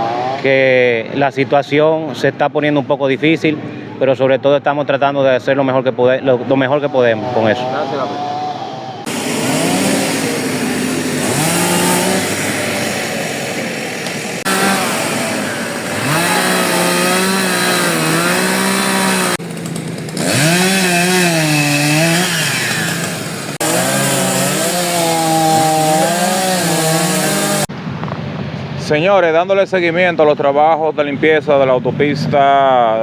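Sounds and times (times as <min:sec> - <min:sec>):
chainsaw cutting trees: 0:00.0 - 0:00.5, 0:09.0 - 0:27.7.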